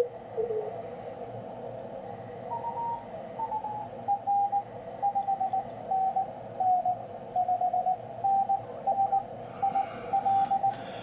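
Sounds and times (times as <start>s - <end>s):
morse code tone: 2.5s - 11.0s
radio band hiss: 9.4s - 11.0s.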